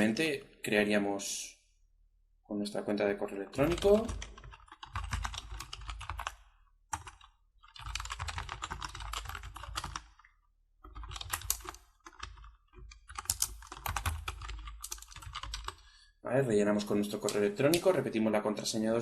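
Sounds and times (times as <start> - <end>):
computer keyboard typing: 3.6 - 15.9, 16.9 - 18.0.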